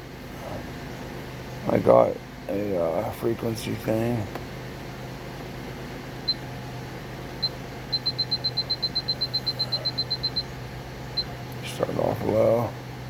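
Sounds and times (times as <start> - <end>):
electronic button beeps: 7.4 - 10.5.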